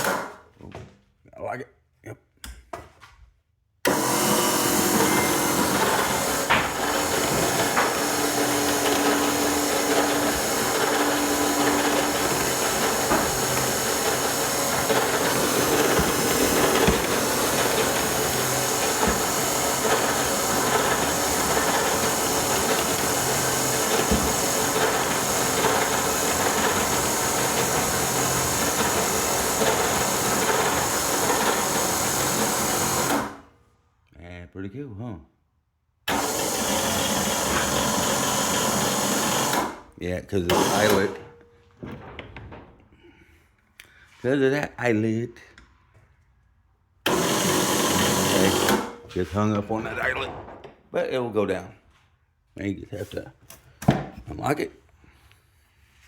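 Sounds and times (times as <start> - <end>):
garage door opener motor running: 0.0 - 0.4, 3.9 - 33.5, 36.1 - 39.9, 40.5 - 42.4, 47.0 - 49.0.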